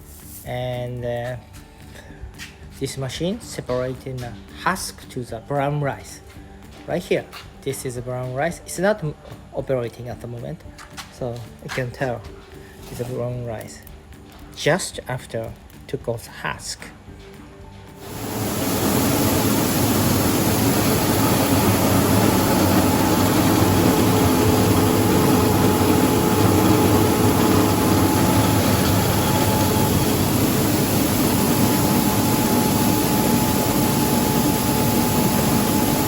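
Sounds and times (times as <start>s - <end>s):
faint machine whine: 18.0s - 36.0s
husking machine rumbling and rattling: 18.0s - 36.0s.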